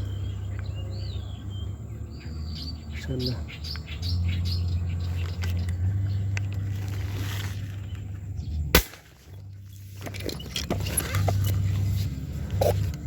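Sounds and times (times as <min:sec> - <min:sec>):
spear gun snap: 0:08.8 - 0:09.2.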